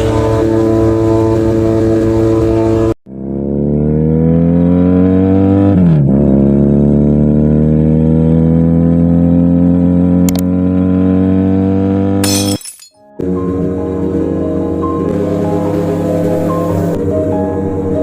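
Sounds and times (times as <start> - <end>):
motorcycle engine accelerating: 0.0 - 12.5, 13.2 - 18.0.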